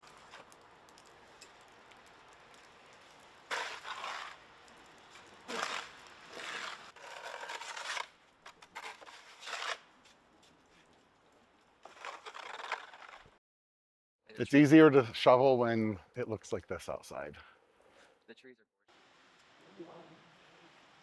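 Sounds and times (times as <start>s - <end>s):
snow shovel scraping pavement: 3.4s - 4.5s, 5.1s - 10.2s, 11.8s - 13.4s.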